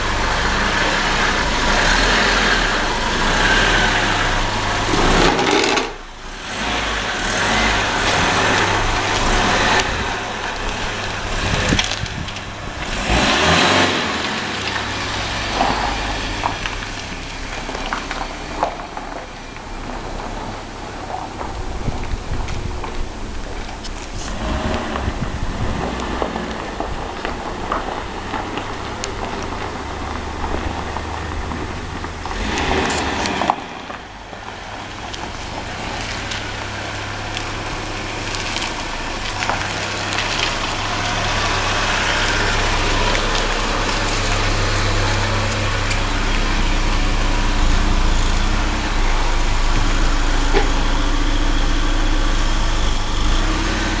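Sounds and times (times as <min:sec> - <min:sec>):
car engine running: 0:00.0 - 0:54.0
engine surge: 0:00.0 - 0:54.0.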